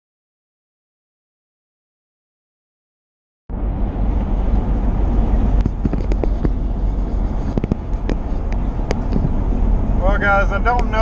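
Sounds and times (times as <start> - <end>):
vehicle engine and road rumble: 3.5 - 11.0.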